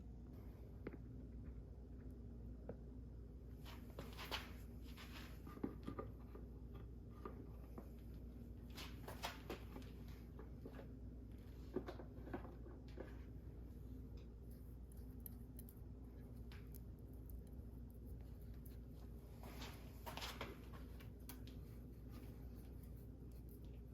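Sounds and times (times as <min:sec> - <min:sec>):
low hum: 0:13.2 - 0:23.9.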